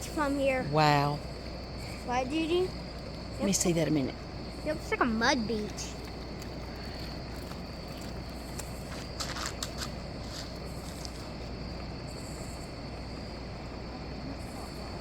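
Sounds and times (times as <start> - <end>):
high insect drone: 0.0 - 15.0
footsteps on wet ground: 5.6 - 11.5.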